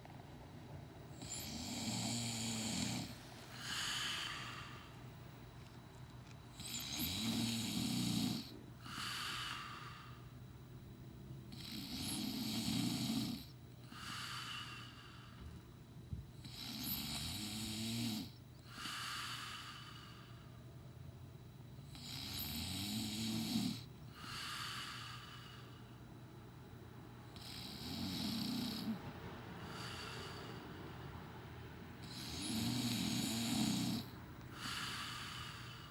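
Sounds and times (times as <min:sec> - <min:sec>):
man snoring: 0:01.1 - 0:04.9, 0:06.6 - 0:10.2, 0:11.5 - 0:15.4, 0:16.4 - 0:20.4, 0:21.9 - 0:25.8, 0:27.3 - 0:29.0, 0:29.6 - 0:30.6, 0:32.0 - 0:35.9
soft breath: 0:01.1 - 0:05.8, 0:08.8 - 0:10.5, 0:13.8 - 0:15.6, 0:18.6 - 0:20.6, 0:24.1 - 0:26.1, 0:28.9 - 0:31.0, 0:34.0 - 0:35.9.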